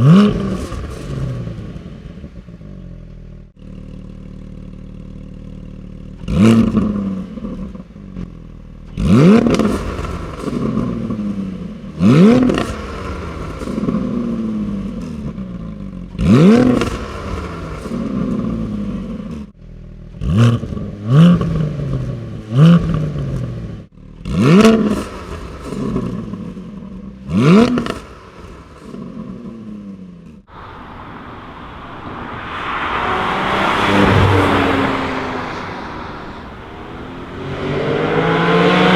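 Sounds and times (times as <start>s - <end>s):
car engine idling and revving: 0.0s - 38.9s
car accelerating hard: 30.5s - 38.9s.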